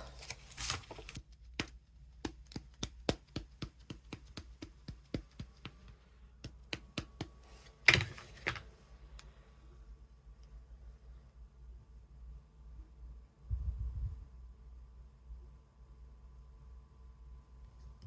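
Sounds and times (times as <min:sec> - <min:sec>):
ink pad tapping on rubber stamp: 0:01.6 - 0:08.6.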